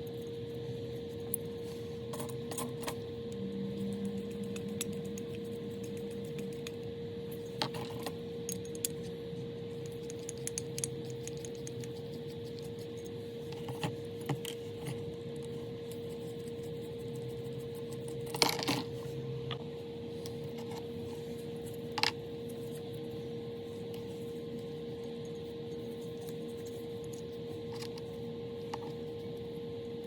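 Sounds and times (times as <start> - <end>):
steady hum: 0.0 - 30.0
metallic clicks of small parts: 7.6 - 9.1, 9.9 - 11.9.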